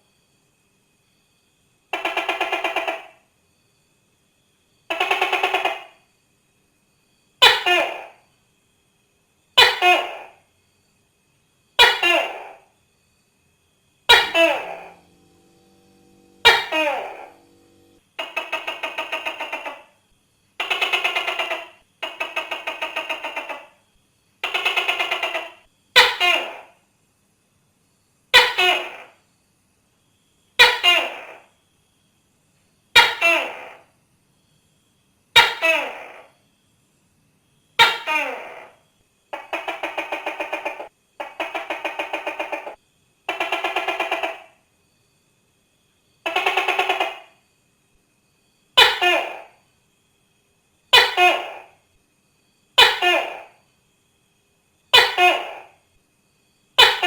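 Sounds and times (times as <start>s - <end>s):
gecko calling: 1.9s - 3.2s, 4.9s - 6.0s, 7.4s - 8.2s, 9.6s - 10.4s, 11.8s - 12.6s, 14.1s - 20.0s, 20.6s - 23.8s, 24.4s - 26.8s, 28.4s - 29.2s, 30.6s - 31.5s, 37.8s - 44.6s, 46.3s - 47.4s, 48.8s - 49.6s, 50.9s - 51.8s, 52.8s - 53.6s, 54.9s - 55.8s, 56.8s - 57.0s.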